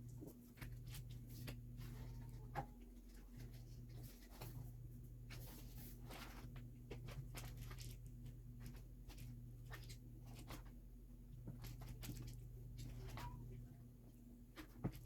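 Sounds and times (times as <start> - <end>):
low electrical hum: 0.0 - 15.0
packaging clicks and rustles: 5.3 - 10.8.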